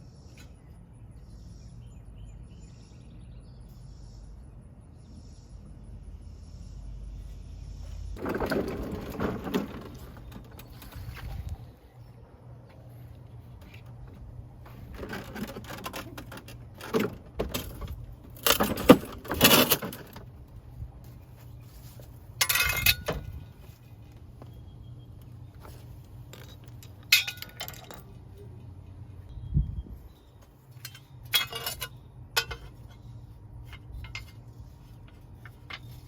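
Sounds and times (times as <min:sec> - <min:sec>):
steady low hum: 0:00.0 - 0:08.3
metal tools clinking and scraping: 0:22.4 - 0:23.4, 0:25.7 - 0:28.2, 0:30.7 - 0:36.0.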